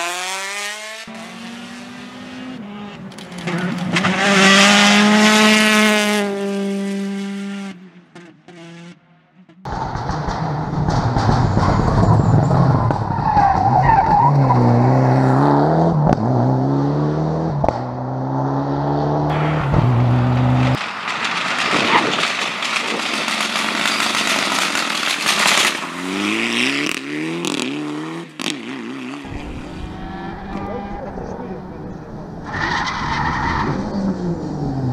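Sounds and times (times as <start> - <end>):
rally car engines revving: 0.0 - 9.0, 9.7 - 34.9
tyres skidding: 1.1 - 6.1, 9.7 - 16.4, 19.1 - 34.9.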